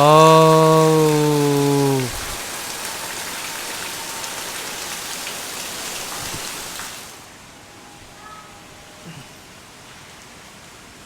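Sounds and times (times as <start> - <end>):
water splashing: 0.0 - 7.2
heavy rain pouring: 0.0 - 7.4.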